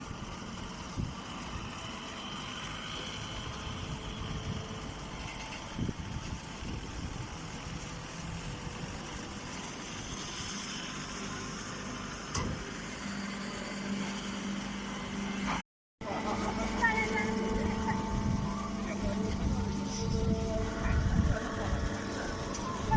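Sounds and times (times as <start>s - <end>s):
hay baler engine running: 0.0s - 22.9s
steady hum: 13.0s - 22.9s.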